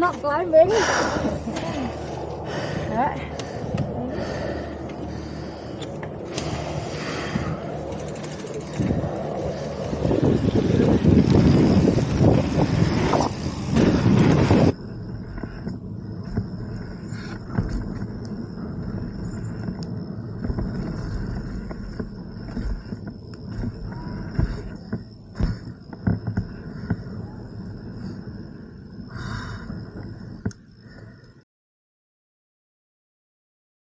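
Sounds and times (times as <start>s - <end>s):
wind roaring on microphone: 0.0s - 31.2s.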